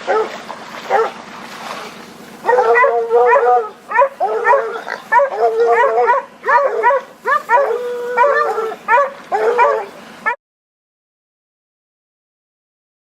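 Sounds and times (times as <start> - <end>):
hunting dogs barking and baying: 0.0 - 10.4.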